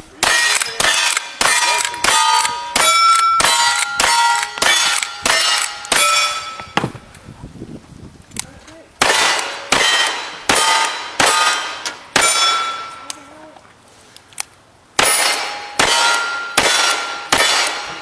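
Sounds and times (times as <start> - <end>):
steel target ringing: 0.2 - 6.8, 9.0 - 13.1, 15.0 - 18.0
gunshots: 0.2 - 6.9, 9.0 - 12.9, 15.0 - 18.0.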